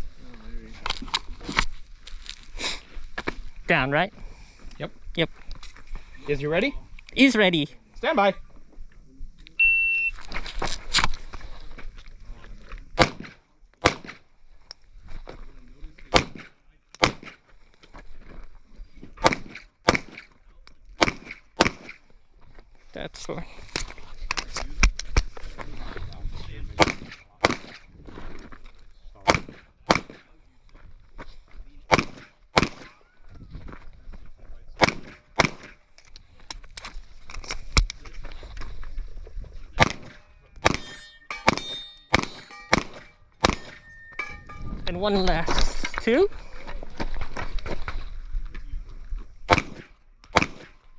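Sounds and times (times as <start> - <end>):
shot timer beep: 9.6 - 10.2
pistol shots: 13.0 - 14.2, 16.1 - 17.4, 19.2 - 20.2, 21.0 - 22.0, 26.8 - 27.8, 29.3 - 30.2, 31.9 - 33.0, 34.8 - 35.8, 39.8 - 44.4, 49.5 - 50.8
handling and movement noise: 35.1 - 49.9.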